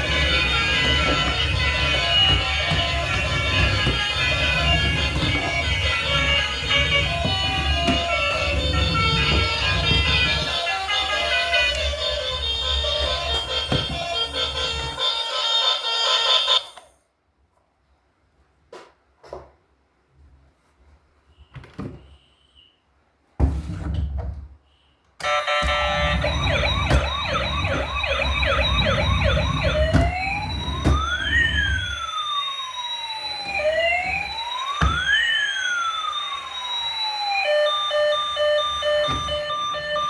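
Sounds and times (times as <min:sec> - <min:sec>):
toy electronic siren: 0:00.0 - 0:16.9, 0:25.2 - 0:40.0.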